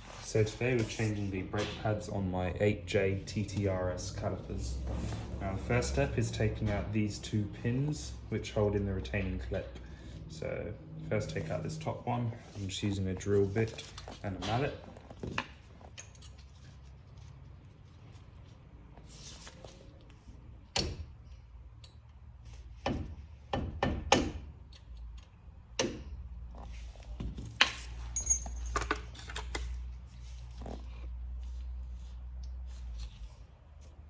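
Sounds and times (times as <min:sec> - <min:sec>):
metal clinks: 0:28.2 - 0:29.2.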